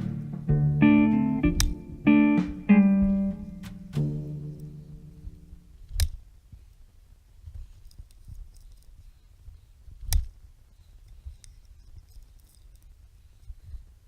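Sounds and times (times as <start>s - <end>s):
faint small clicks: 7.4s - 13.9s.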